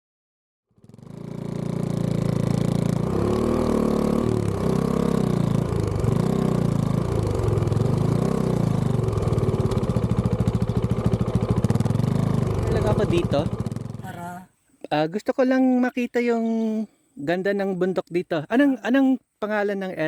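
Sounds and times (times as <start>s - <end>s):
motorcycle engine idling: 0.8s - 3.0s, 4.4s - 14.3s.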